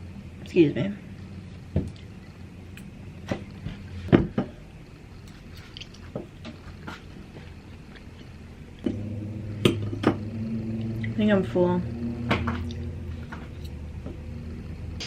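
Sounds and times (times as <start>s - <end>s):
low steady hum: 0.0s - 15.0s
person chewing and biting: 5.1s - 8.8s.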